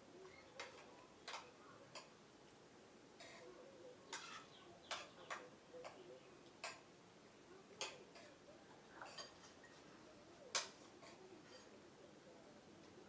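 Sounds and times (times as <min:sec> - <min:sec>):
faint eating clicks and smacks: 0:00.3 - 0:02.6, 0:04.1 - 0:06.9, 0:07.7 - 0:09.9, 0:10.5 - 0:11.8.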